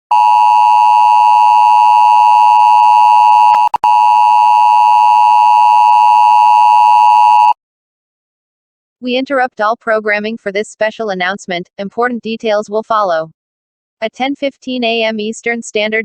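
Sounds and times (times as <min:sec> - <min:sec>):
two-tone alarm: 0:00.1 - 0:07.6.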